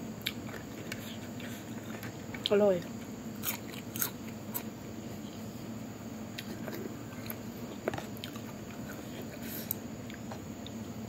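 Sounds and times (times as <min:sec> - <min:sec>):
person chewing: 0:00.2 - 0:02.5, 0:03.4 - 0:05.4, 0:06.3 - 0:10.8.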